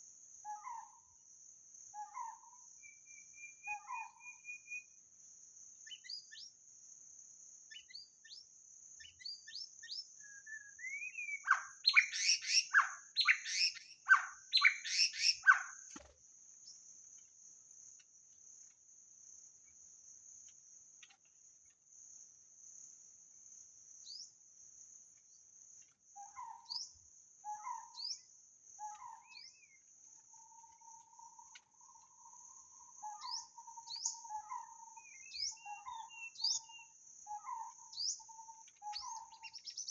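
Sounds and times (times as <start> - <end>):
bird singing whistled phrases: 2.9 - 4.9, 9.2 - 15.7.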